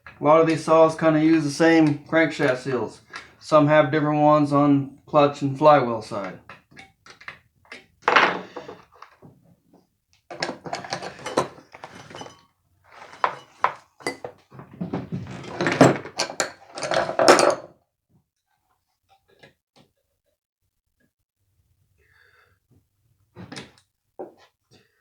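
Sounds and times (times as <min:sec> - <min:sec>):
metal tools clinking: 0:10.4 - 0:14.3.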